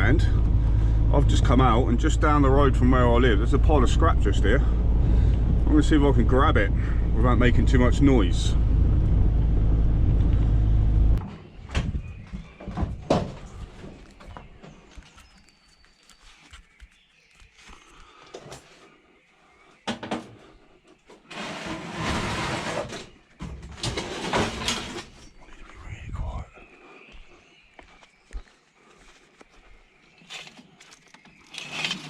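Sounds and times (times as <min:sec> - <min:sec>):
vehicle engine running: 0:00.0 - 0:11.2
knocks and clunks: 0:11.2 - 0:14.8
rough scraping or rustling: 0:21.2 - 0:23.2, 0:23.8 - 0:25.2, 0:31.3 - 0:32.0.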